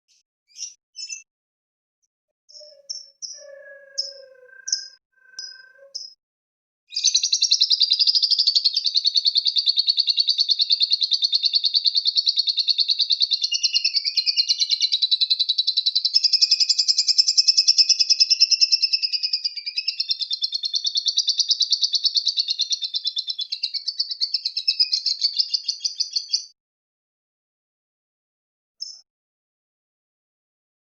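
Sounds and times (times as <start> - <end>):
lovebird chirps: 0.1 - 1.3, 2.5 - 6.2, 28.8 - 29.0
lovebird chattering trill: 2.5 - 6.1.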